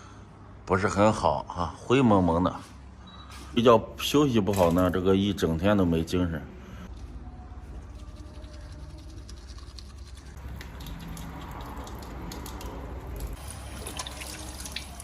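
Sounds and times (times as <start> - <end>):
toothbrush brushing teeth: 7.8 - 12.6.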